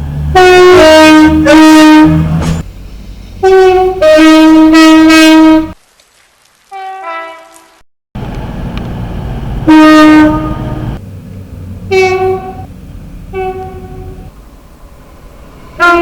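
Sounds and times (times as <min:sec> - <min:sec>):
train rumble: 0:00.0 - 0:05.8, 0:08.2 - 0:16.0
train two-tone air horn: 0:00.4 - 0:02.4, 0:03.4 - 0:05.8, 0:06.7 - 0:07.6, 0:09.7 - 0:11.0, 0:11.9 - 0:12.7, 0:13.3 - 0:14.3, 0:15.8 - 0:16.0.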